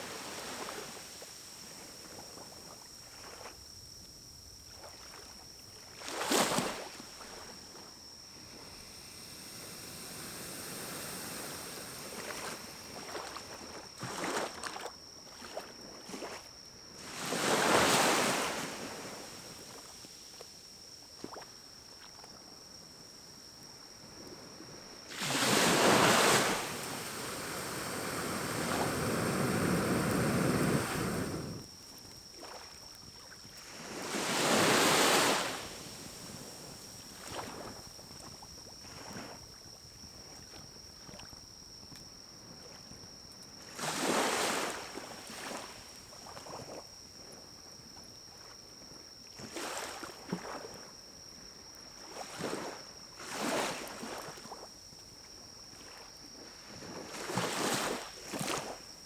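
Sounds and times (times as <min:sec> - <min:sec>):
air blown through blow pipe: 0:26.6 - 0:31.6.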